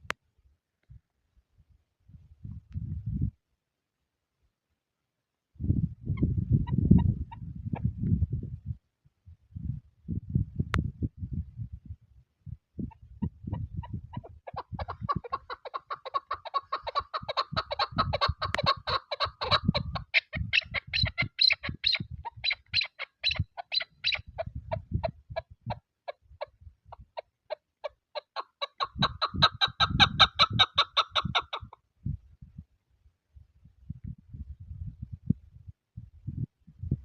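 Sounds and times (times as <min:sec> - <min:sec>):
wind buffeting microphone: 0:01.6 - 0:03.4, 0:05.5 - 0:27.2, 0:28.8 - 0:37.0
partridge clucking calls: 0:12.8 - 0:31.8.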